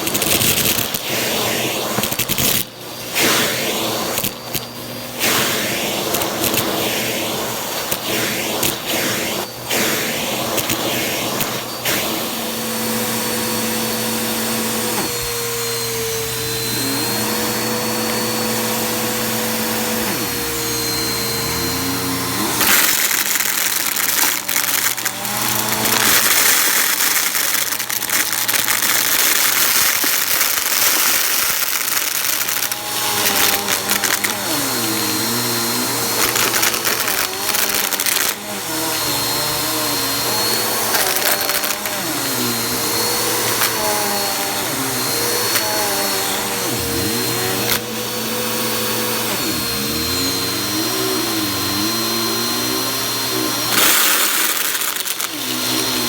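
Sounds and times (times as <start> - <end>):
vacuum cleaner running: 0.0 - 56.0
debris clicking in vacuum: 22.2 - 46.1, 52.4 - 56.0.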